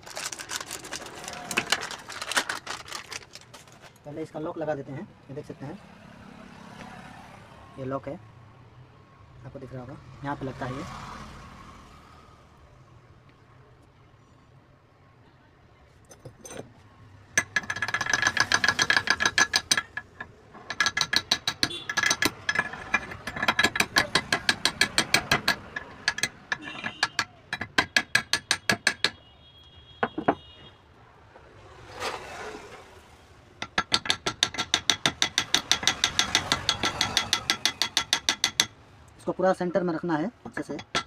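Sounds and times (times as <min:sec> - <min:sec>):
rapid ratcheting clicks: 0:17.4 - 0:29.0.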